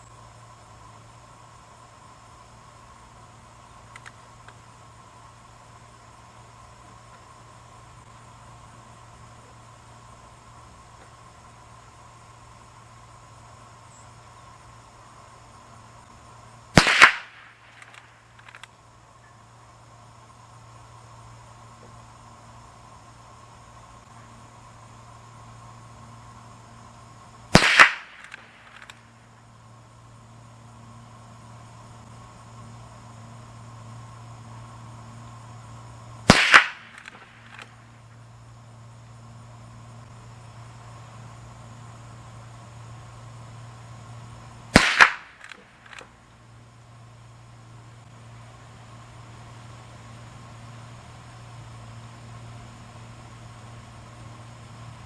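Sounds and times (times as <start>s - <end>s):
faint clicks: 3.9s - 4.6s, 28.2s - 29.0s
rifle shot with echo: 16.8s - 18.1s, 27.5s - 28.9s, 36.3s - 37.7s, 44.7s - 46.0s.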